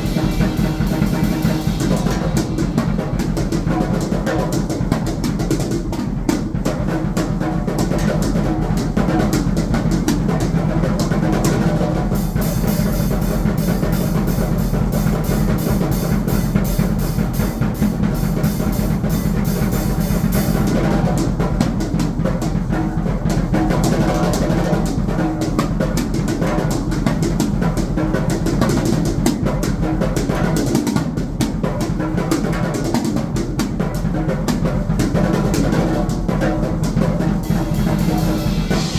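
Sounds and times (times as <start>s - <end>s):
steady high hiss: 0.0s - 4.2s, 12.2s - 20.6s, 37.3s - 38.9s
drum kit played fast: 0.0s - 38.9s.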